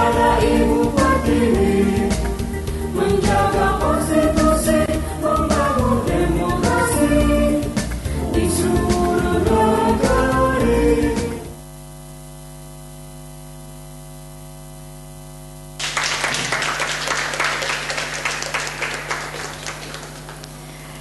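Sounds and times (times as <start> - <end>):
choral music: 0.0 - 11.6
electrical mains hum: 8.0 - 21.0
applause: 15.8 - 21.0.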